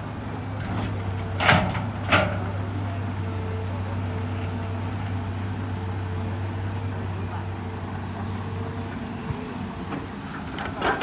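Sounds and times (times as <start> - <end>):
diesel engine running: 0.0 - 11.0
loud clunks: 0.6 - 3.1.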